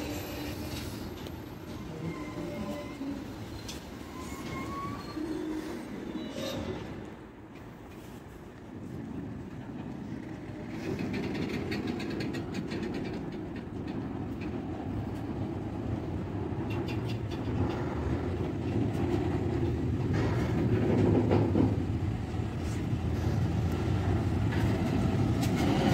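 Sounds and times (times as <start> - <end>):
train rumble: 0.0 - 25.9
wheels clacking over rail joints: 9.7 - 25.9.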